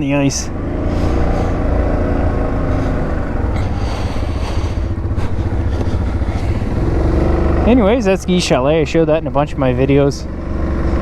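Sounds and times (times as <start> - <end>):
quad bike engine running: 0.0 - 11.0
light knocks over bumps: 4.5 - 7.1.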